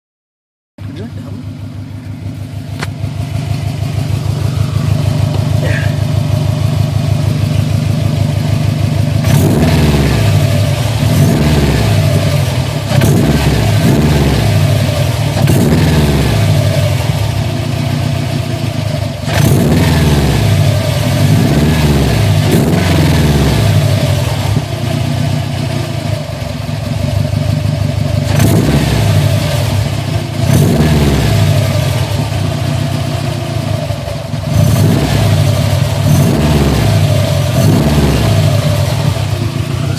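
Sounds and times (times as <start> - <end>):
car engine idling and revving: 0.8 - 39.9
steady whine: 0.9 - 21.6, 31.3 - 39.9.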